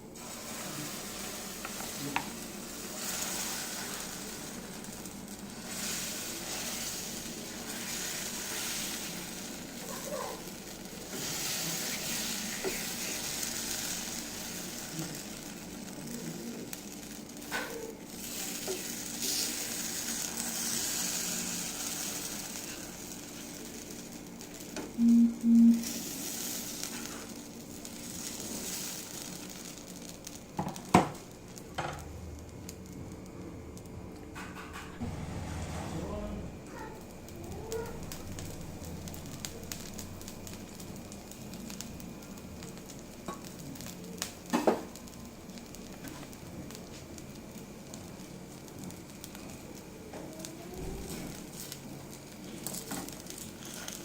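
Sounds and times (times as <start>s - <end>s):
batter sizzling on a griddle: 0.0s - 25.1s, 25.7s - 54.0s
short loud low tones: 25.0s - 25.9s.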